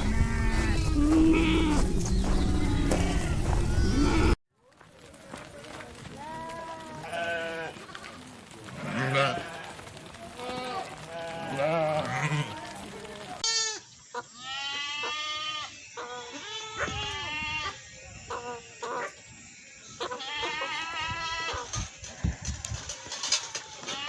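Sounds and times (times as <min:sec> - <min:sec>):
livestock bleating: 0:00.0 - 0:01.8, 0:06.2 - 0:07.8, 0:08.8 - 0:09.8, 0:10.4 - 0:12.8, 0:13.4 - 0:17.8, 0:19.9 - 0:22.4.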